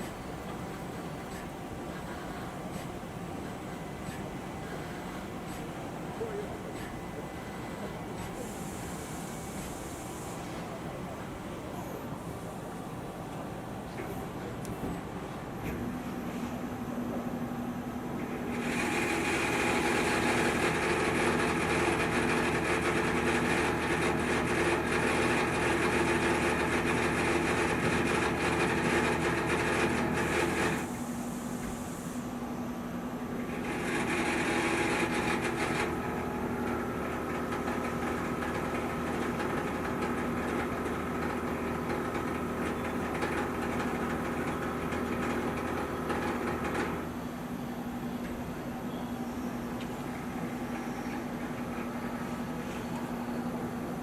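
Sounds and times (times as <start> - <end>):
lathe machining with whining tones: 18.4 - 31.4, 33.2 - 48.2
burst of hiss: 30.9 - 32.3.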